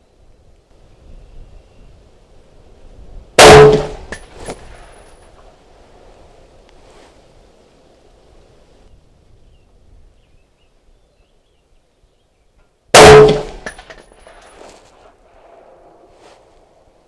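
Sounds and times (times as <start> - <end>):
rifle shot with echo: 3.4 - 4.9, 13.0 - 14.0.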